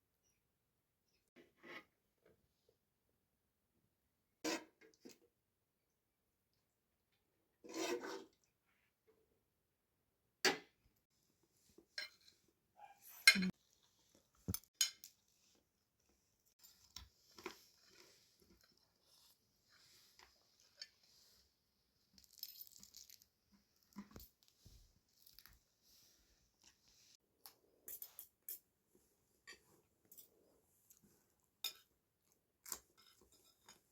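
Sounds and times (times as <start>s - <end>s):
dishes and cutlery clinking: 11.9s - 12.4s, 13.1s - 13.6s, 32.6s - 33.9s.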